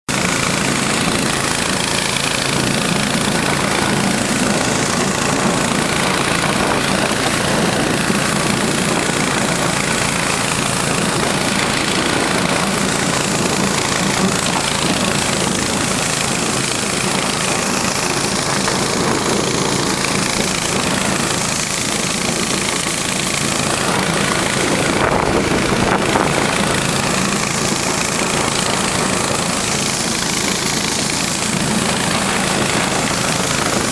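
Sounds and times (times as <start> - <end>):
small engine running: 0.1 - 33.9.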